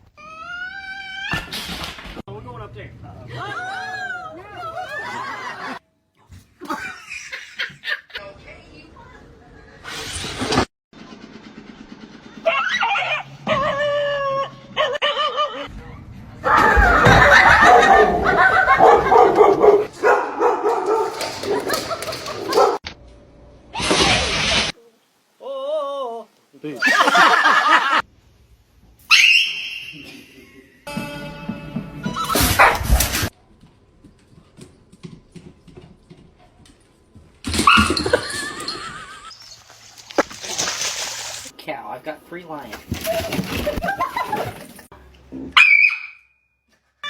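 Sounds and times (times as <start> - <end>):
dog barking and whining: 12.4 - 15.7, 16.5 - 22.8, 45.5 - 46.2
dog howling and yipping: 12.4 - 15.7.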